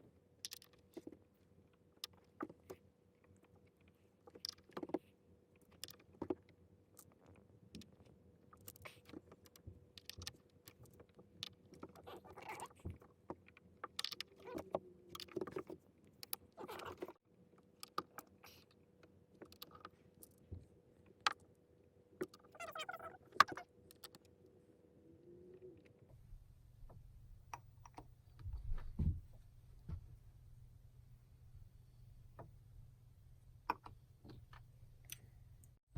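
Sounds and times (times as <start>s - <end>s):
faint steady hum: 12.9s - 35.8s.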